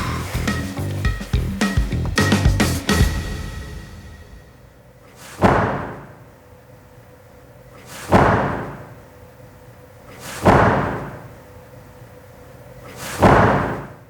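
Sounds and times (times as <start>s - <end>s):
swish and heavy impact hit: 3.0s - 6.1s.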